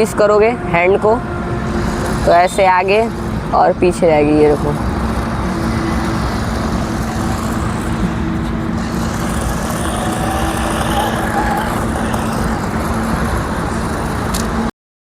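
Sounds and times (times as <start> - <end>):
toy car motor hum: 6.4 - 14.4.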